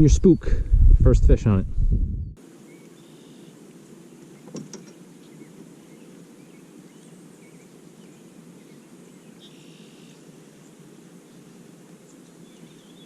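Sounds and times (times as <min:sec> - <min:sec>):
faint bird chirps: 0:02.6 - 0:03.6, 0:05.2 - 0:13.0.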